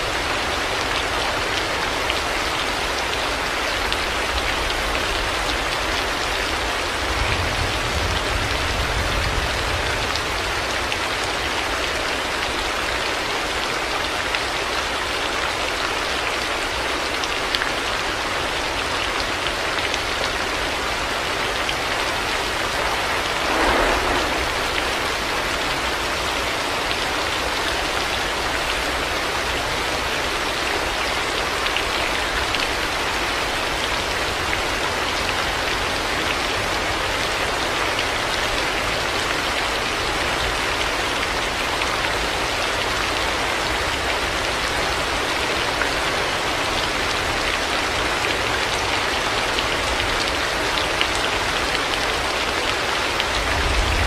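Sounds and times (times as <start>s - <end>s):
heavy rain on hard surfaces: 0.0s - 54.0s
rush of rain: 0.0s - 54.0s
low rumble: 22.1s - 26.0s.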